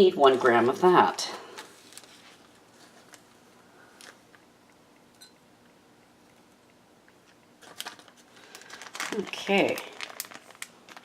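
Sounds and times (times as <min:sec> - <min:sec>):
packaging rustling: 0:01.4 - 0:03.4, 0:07.6 - 0:11.0.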